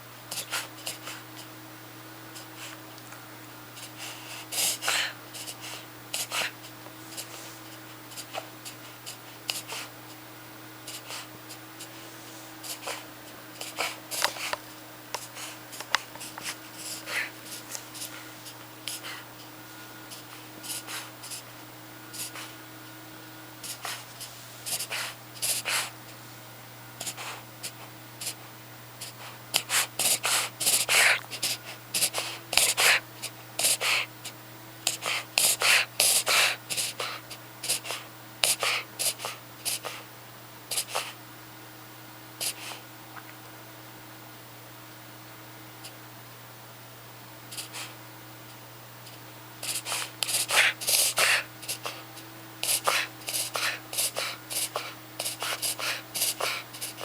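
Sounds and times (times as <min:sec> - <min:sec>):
puppy's short noisy breaths: 0:23.6 - 0:25.9, 0:34.9 - 0:40.0, 0:49.6 - 0:52.0, 0:52.6 - 0:57.0.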